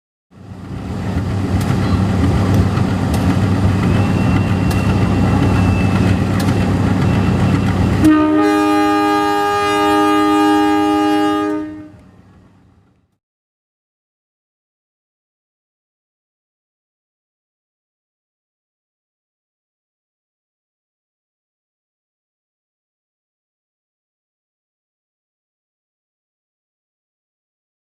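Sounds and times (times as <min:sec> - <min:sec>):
locomotive rumbling: 0:00.4 - 0:13.0
locomotive air horn blast: 0:07.8 - 0:12.1.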